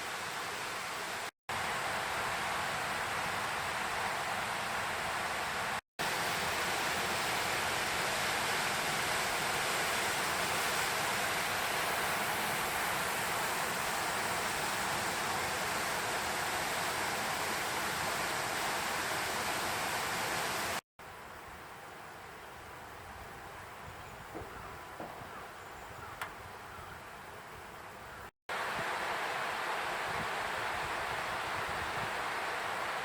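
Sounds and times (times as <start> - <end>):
river water rushing over rocks: 0.0 - 20.8, 28.5 - 33.0
quiet outdoor ambience: 0.0 - 33.0.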